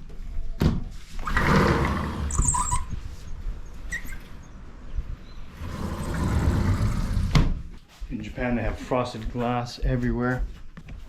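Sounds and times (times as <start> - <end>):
rustling footsteps: 7.5 - 11.0.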